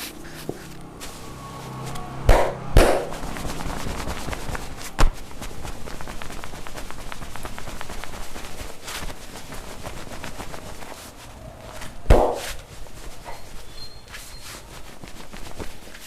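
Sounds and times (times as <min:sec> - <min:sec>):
hands slapping the body: 0:01.9 - 0:03.2, 0:04.1 - 0:05.2, 0:12.1 - 0:12.6.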